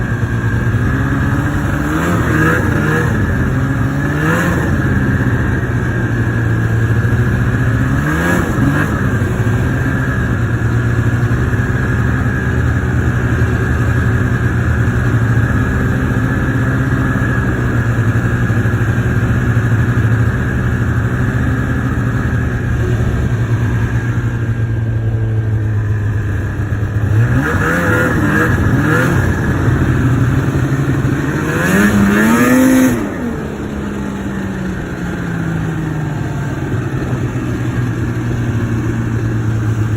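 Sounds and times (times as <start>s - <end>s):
snowmobile engine running: 0.0s - 39.9s.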